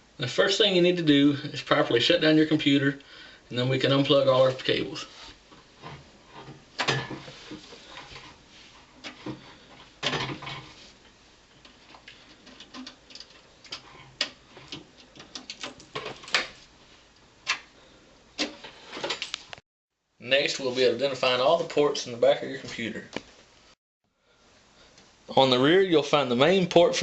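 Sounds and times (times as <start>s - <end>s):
cables and connectors rattling: 11.5s - 16.7s.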